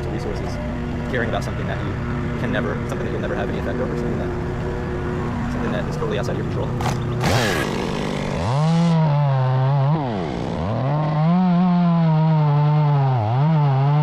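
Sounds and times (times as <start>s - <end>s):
chainsaw revving: 6.7s - 14.0s.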